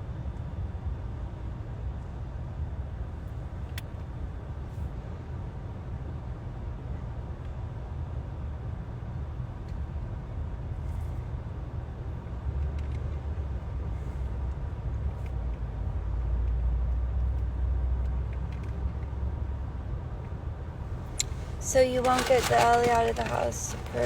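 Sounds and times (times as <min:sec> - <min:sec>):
truck engine rumbling: 0:20.8 - 0:24.0.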